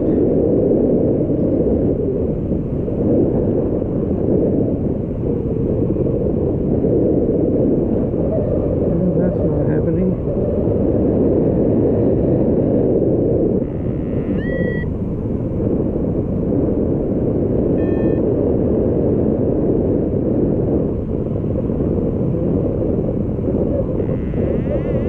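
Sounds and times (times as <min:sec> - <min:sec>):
wind rushing over microphone: 0:00.0 - 0:25.0
electronic beeps: 0:13.6 - 0:14.9, 0:17.8 - 0:18.2.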